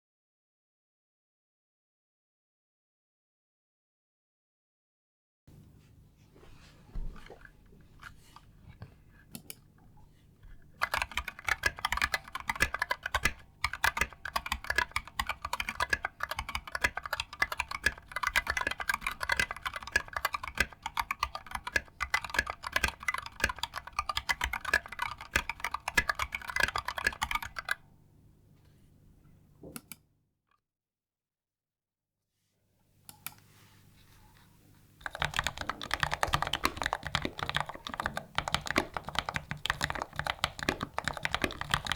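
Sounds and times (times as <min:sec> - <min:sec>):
mechanical keyboard typing: 0:10.8 - 0:27.8, 0:35.0 - 0:41.9.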